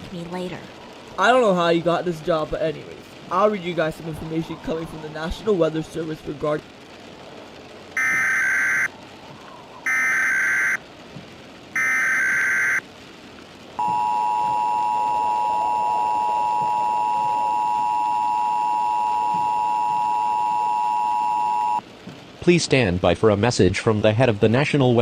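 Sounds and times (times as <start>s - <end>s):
rasping digital data tones: 8.0s - 8.9s, 9.9s - 10.8s, 11.8s - 12.8s
two-tone attention signal: 8.0s - 8.9s, 9.9s - 10.8s, 11.8s - 12.8s, 13.8s - 21.8s.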